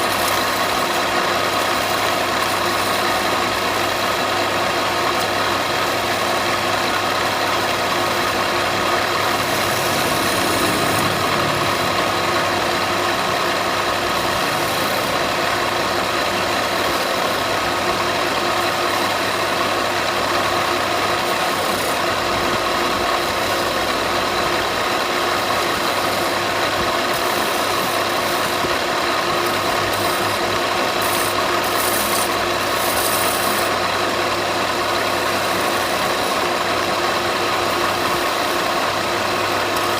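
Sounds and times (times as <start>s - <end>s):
power tool motor running: 6.1s - 33.8s.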